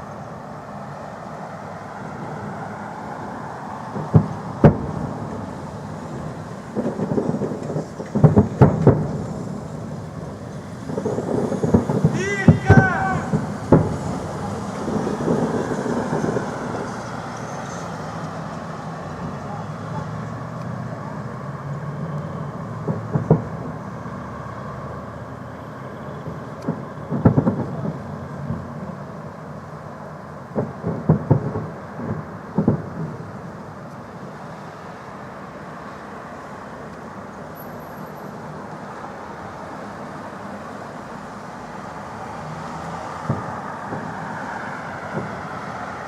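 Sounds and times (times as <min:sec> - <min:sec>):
fireworks booming: 0:03.8 - 0:20.5, 0:22.3 - 0:24.9, 0:26.1 - 0:29.5, 0:30.4 - 0:34.7, 0:41.4 - 0:46.0.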